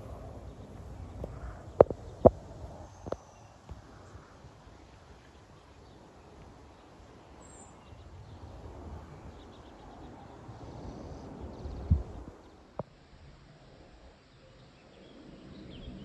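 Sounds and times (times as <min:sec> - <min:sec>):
low steady rumble: 0:00.0 - 0:05.7.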